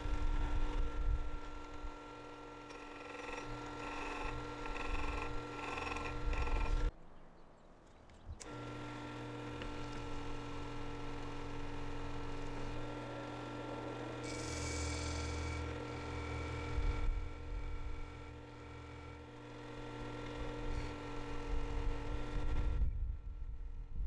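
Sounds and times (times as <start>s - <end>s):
electrical hum: 0.0s - 24.0s
chisel rubbed on sharpening stone: 2.7s - 6.8s, 14.2s - 15.6s.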